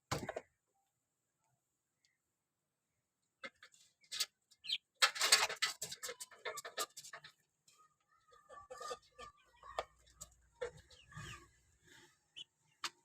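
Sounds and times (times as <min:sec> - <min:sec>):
chickens clucking and squawking: 0:03.4 - 0:13.0.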